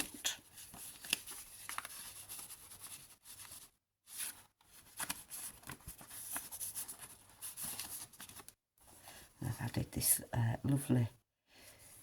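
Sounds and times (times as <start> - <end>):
paper rustling and crinkling: 0.0 - 9.4.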